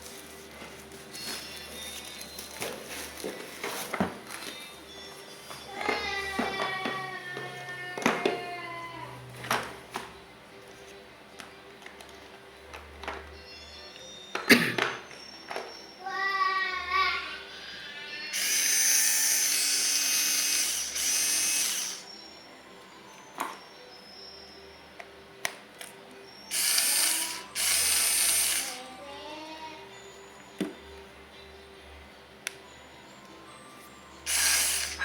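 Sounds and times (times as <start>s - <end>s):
electric drill motor winding: 18.3s - 22.1s, 26.5s - 29.0s, 34.2s - 35.0s
drill ratcheting bursts: 18.4s - 22.0s, 26.5s - 28.8s, 34.3s - 35.0s.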